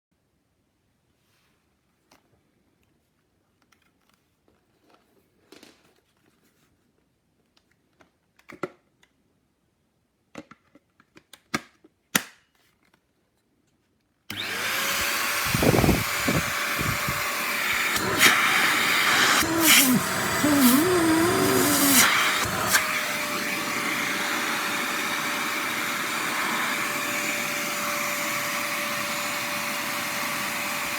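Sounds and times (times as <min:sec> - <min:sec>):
vacuum cleaner whine: 0:14.3 - 0:30.9.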